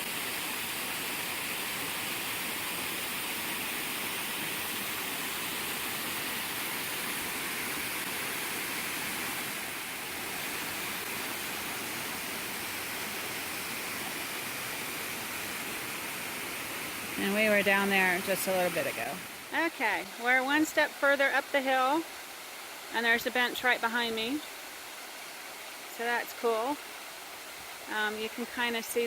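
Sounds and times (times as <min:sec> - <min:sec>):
distant waterfall roaring: 0:00.0 - 0:24.9.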